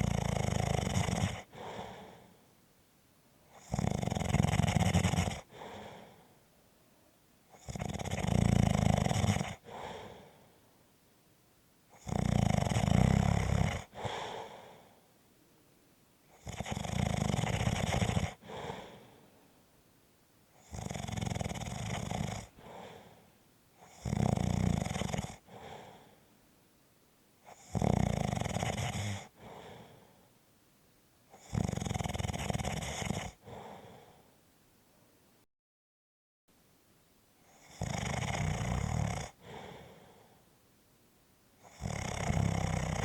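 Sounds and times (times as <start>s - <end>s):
rhythmic snoring: 0.0s - 2.4s, 3.5s - 6.3s, 7.5s - 10.5s, 11.9s - 15.0s, 16.3s - 19.3s, 20.6s - 26.2s, 27.4s - 30.2s, 31.3s - 34.3s, 37.4s - 40.4s, 41.6s - 43.0s.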